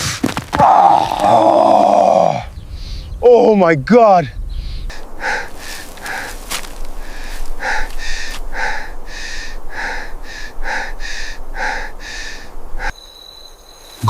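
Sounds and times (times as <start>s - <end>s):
person panting heavily: 4.9s - 13.0s.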